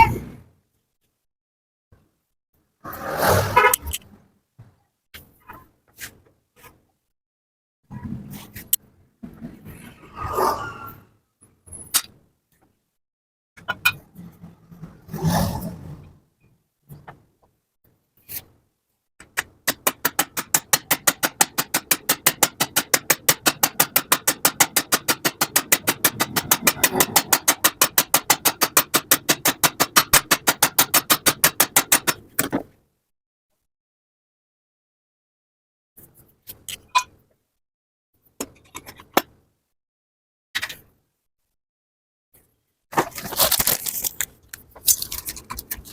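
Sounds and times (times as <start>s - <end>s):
mechanical knocks and clatter: 19.2s - 32.7s.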